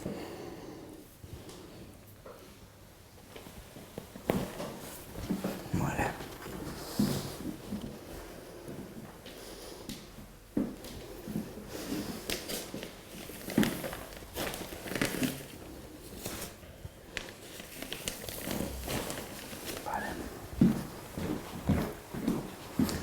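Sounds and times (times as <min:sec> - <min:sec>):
body and clothing rustling: 0:17.2 - 0:23.0.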